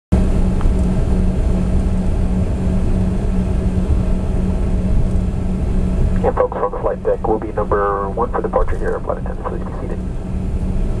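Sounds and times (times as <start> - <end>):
jet cabin engine drone: 0.1 - 11.0.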